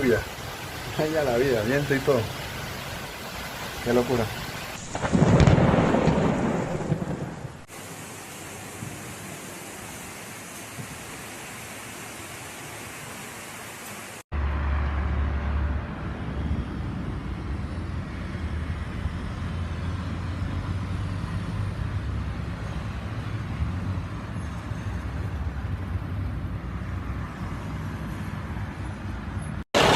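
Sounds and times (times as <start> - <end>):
heavy rain hissing: 0.0 - 14.2.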